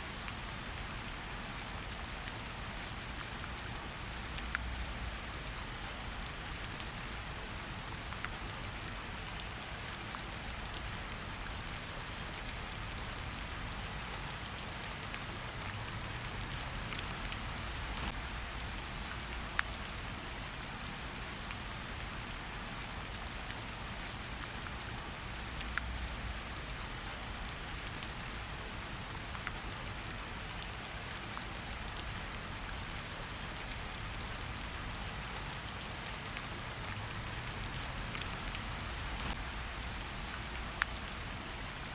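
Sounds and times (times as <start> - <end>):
rain falling: 0.0 - 41.9
raindrop ticks: 12.3 - 22.4, 23.0 - 41.8.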